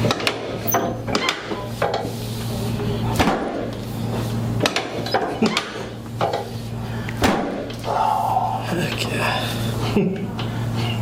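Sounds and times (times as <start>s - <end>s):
steady low hum: 0.0s - 11.0s
sharp clicks and knocks: 4.6s - 6.5s.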